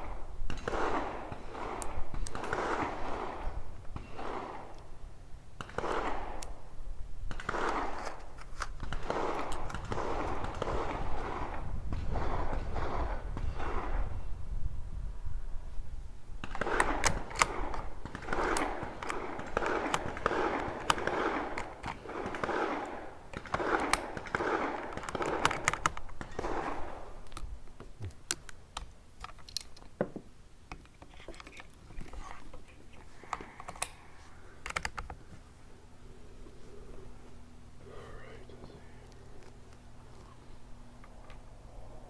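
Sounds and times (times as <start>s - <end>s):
cartridges clicking and rattling: 7.2s - 11.7s, 16.4s - 37.2s.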